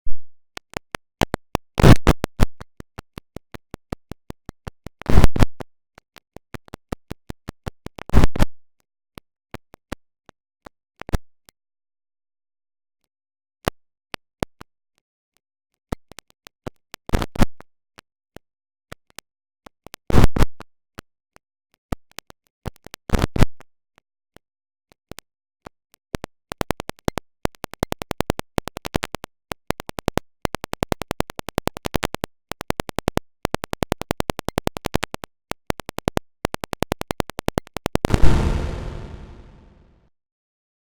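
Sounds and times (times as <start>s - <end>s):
stuttering alarm sound: 38.1s - 39.8s.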